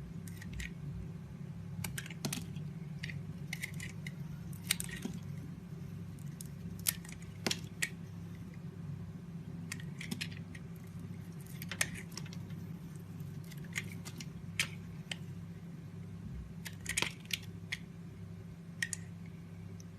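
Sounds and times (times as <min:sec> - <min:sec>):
steady low hum: 0:00.0 - 0:19.9
knife cutting soap: 0:00.2 - 0:00.8, 0:01.8 - 0:05.6, 0:09.6 - 0:15.2.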